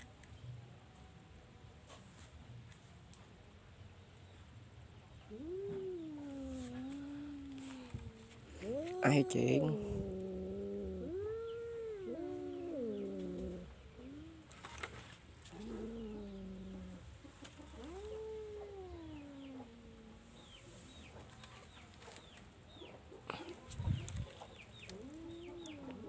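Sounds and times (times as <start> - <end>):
cat meowing: 5.3 - 14.3.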